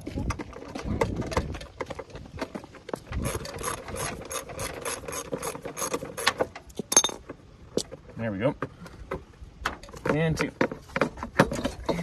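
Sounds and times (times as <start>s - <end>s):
ratchet wrench clicking: 3.2s - 6.3s.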